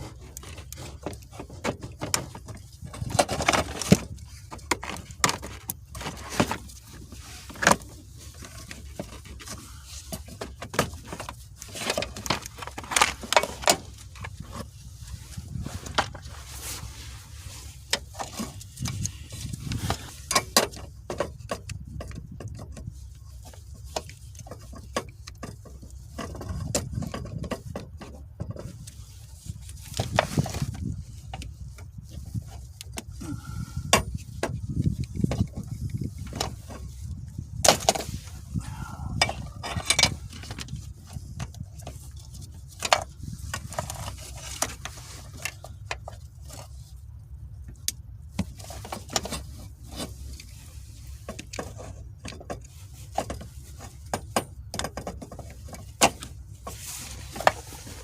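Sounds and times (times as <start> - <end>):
car shifter parts rattling: 0.0 - 17.0, 32.5 - 47.0, 47.7 - 58.0
low steady rumble: 0.0 - 58.0.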